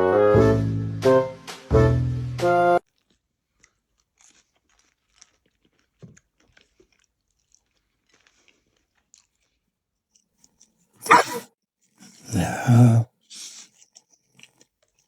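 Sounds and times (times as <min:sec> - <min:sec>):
music: 0:00.0 - 0:02.8
dog chewing something crunchy: 0:03.0 - 0:09.6.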